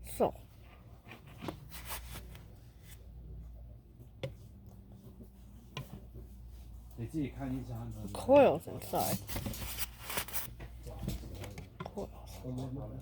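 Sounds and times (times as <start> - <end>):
low steady hum: 0.0 - 13.0
rubbing packaging: 8.9 - 10.5.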